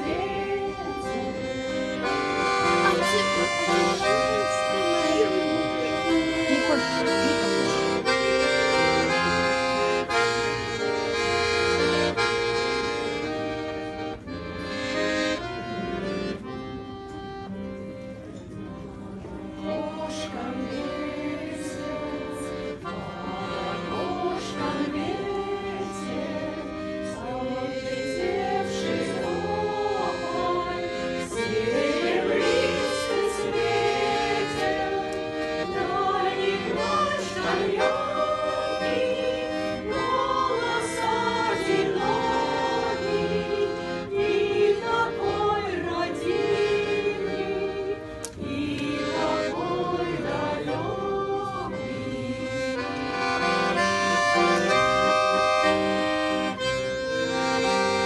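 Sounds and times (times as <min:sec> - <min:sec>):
group of voices singing: 0:00.0 - 0:08.2, 0:19.1 - 0:55.8
accordion playing chords: 0:00.0 - 0:58.0.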